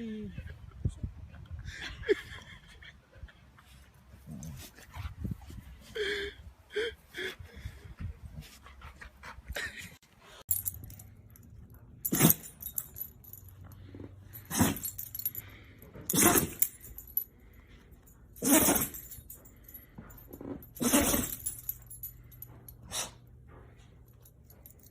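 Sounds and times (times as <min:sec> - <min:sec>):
dog sneezing: 0:14.5 - 0:14.9, 0:16.1 - 0:16.6, 0:18.4 - 0:19.0, 0:20.8 - 0:21.5.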